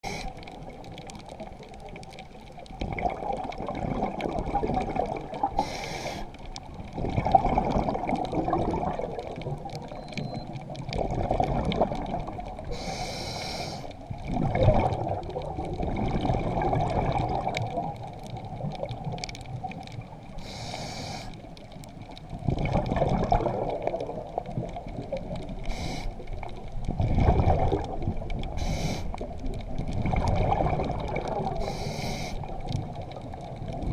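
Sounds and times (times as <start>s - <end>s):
regulator hissing inhale: 0.0s - 0.4s, 5.6s - 6.4s, 12.7s - 13.9s, 20.4s - 21.4s, 25.7s - 26.2s, 28.6s - 29.2s, 31.6s - 32.5s
rumbling exhaust bubbles: 7.0s - 9.6s, 14.3s - 19.7s, 22.4s - 25.4s, 26.8s - 28.6s, 29.2s - 31.6s.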